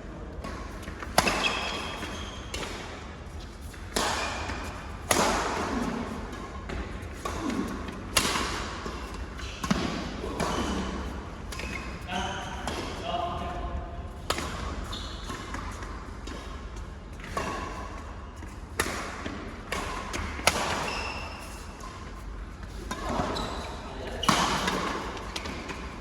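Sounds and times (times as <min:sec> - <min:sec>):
rackets hitting shuttlecock: 0:00.4 - 0:03.0, 0:03.7 - 0:13.0, 0:17.2 - 0:21.4
shoes squeaking on court: 0:00.6 - 0:04.8, 0:08.8 - 0:12.8, 0:14.4 - 0:16.5, 0:19.8 - 0:25.5.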